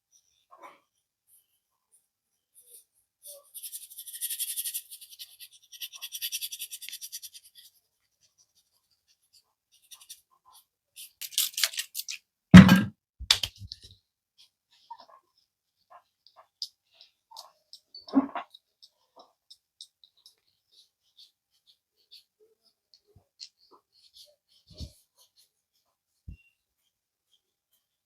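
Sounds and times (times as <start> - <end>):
hands smacking skin: 12.6 - 13.8.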